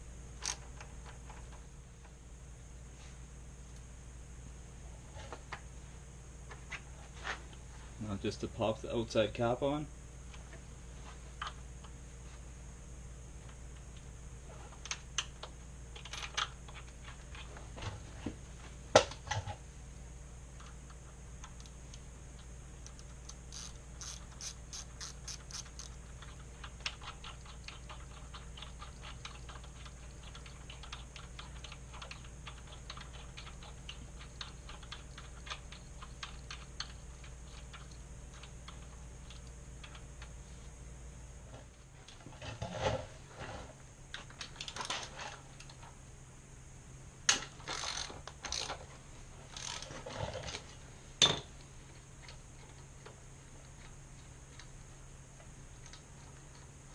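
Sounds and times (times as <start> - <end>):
socket ratchet clicking: 22.9 - 26.0.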